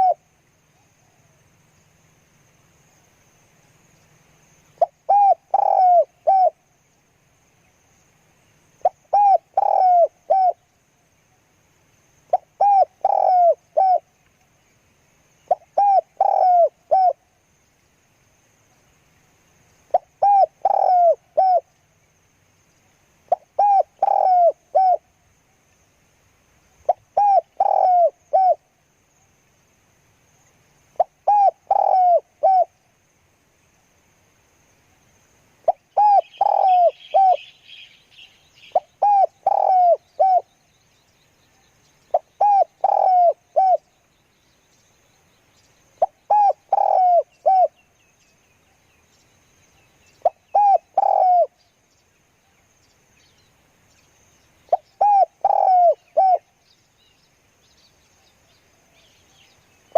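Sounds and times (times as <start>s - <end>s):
dove cooing: 0.0s - 0.2s, 4.8s - 6.6s, 8.8s - 10.6s, 12.3s - 14.1s, 15.5s - 17.2s, 19.9s - 21.7s, 23.3s - 25.0s, 26.9s - 28.6s, 31.0s - 32.8s, 35.7s - 37.5s, 38.7s - 40.5s, 42.1s - 43.8s, 46.0s - 47.8s, 50.2s - 51.6s, 54.7s - 56.5s
high chattering bird call: 36.0s - 38.0s, 38.7s - 40.5s, 46.0s - 47.7s, 50.2s - 51.5s, 54.7s - 56.4s.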